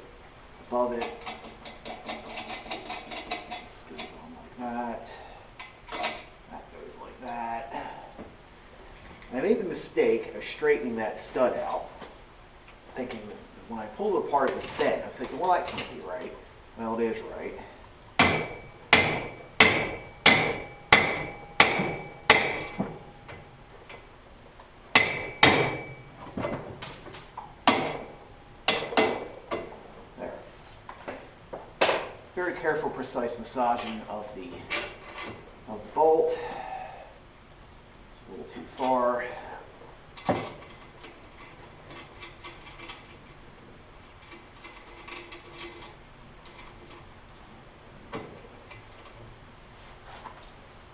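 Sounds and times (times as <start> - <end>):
hammer striking metal: 18.2 - 22.8, 25.0 - 26.0
sharp metal knock: 18.2 - 22.8, 25.0 - 26.0
metallic clicks and clinks: 26.8 - 27.5.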